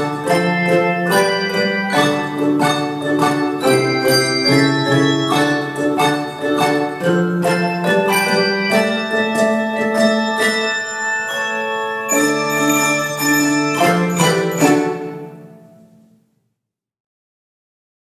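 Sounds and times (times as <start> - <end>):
bell-like struck notes: 0.0 - 15.6.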